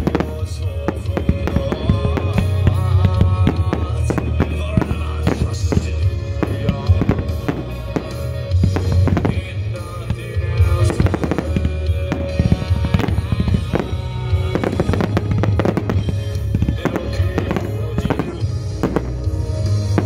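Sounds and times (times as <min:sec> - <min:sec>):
fireworks bangs and crackling: 0:00.0 - 0:20.0
music playing: 0:00.0 - 0:20.0.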